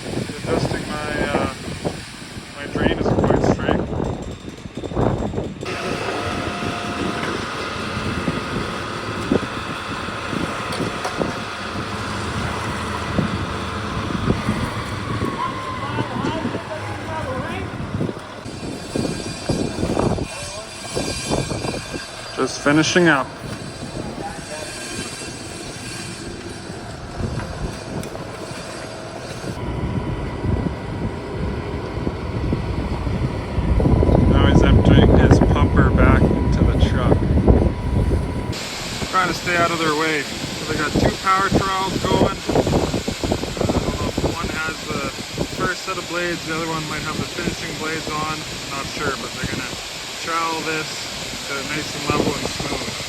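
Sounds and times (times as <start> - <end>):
engine-driven machinery running: 0.0 - 53.0
high hiss: 38.5 - 53.0.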